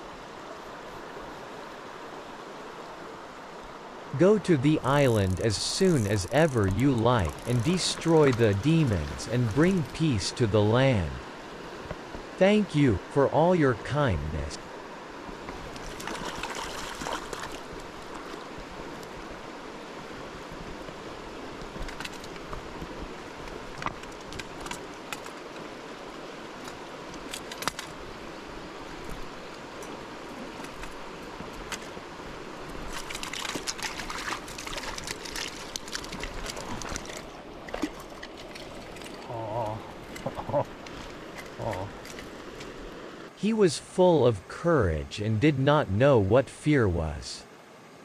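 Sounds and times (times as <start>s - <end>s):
mountain stream running: 0.0s - 48.0s.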